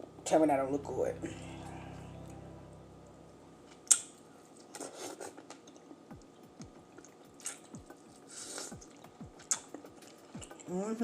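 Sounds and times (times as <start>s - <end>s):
wet smacking and chewing: 3.9s - 10.7s.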